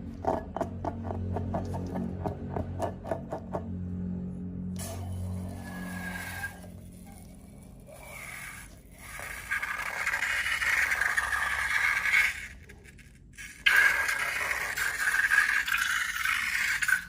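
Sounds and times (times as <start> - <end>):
slime scraping and rubbing: 5.7 - 16.8.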